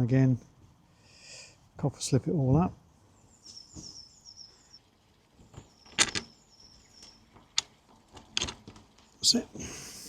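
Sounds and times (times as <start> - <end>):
metal hardware clinking: 5.9 - 6.3.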